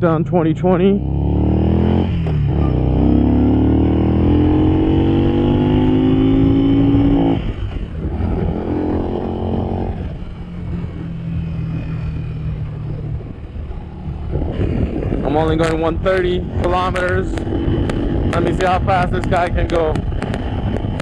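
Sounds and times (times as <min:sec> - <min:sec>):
wind and road noise: 0:00.0 - 0:21.0
motorcycle engine accelerating: 0:00.4 - 0:21.0.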